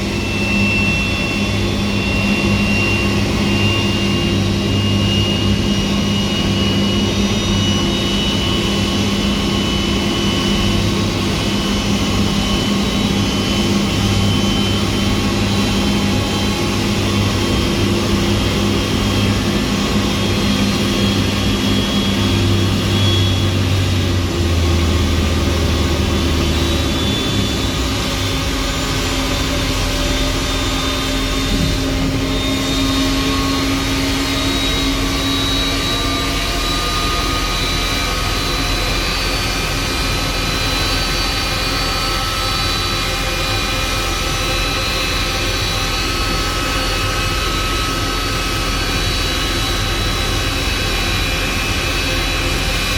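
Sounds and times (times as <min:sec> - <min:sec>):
deep steady hum: 0:00.0 - 0:40.6
jet engines running: 0:00.0 - 0:52.9.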